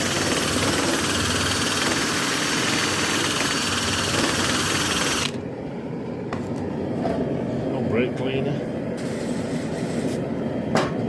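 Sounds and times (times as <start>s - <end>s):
power tool running: 0.0s - 5.4s.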